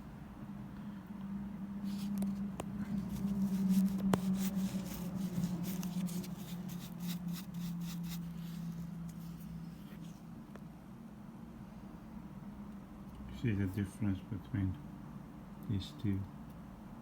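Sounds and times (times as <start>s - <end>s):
steady low hum: 0.0s - 17.0s
scratchy rubbing strokes: 1.9s - 10.2s.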